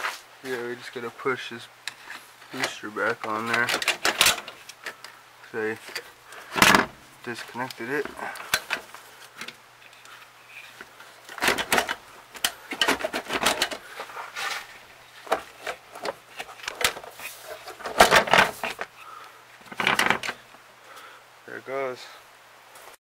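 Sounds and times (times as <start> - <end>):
metal parts knocking and scraping: 1.9 - 5.1, 5.7 - 19.0, 19.6 - 20.4.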